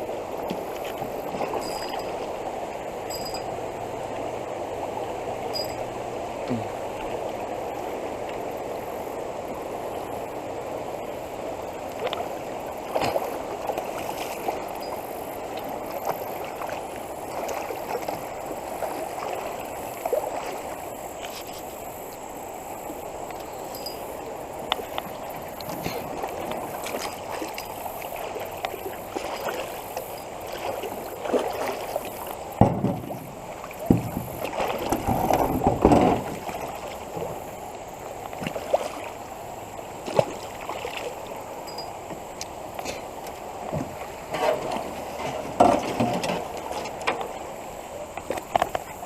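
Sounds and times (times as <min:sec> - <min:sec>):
creek water rushing: 0:00.0 - 0:49.0.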